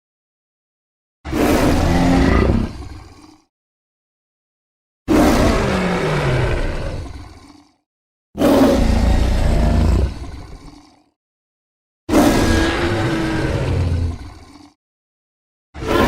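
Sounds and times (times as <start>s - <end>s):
dinosaur roar: 1.3s - 3.5s, 5.1s - 7.8s, 8.4s - 11.2s, 12.1s - 14.8s, 15.8s - 16.0s.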